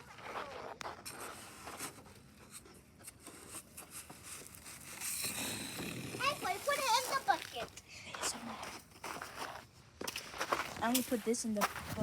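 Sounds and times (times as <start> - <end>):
snow and ice crunching: 3.8 - 12.0.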